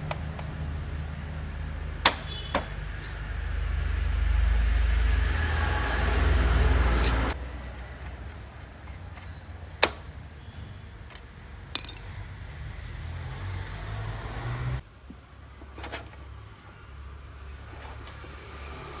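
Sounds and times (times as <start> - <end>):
sharp metallic clinks: 11.7 - 12.4.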